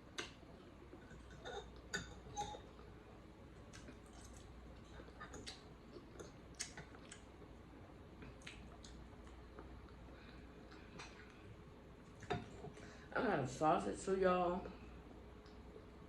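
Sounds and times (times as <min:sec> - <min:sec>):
wet chewing squishes: 0:03.6 - 0:10.0.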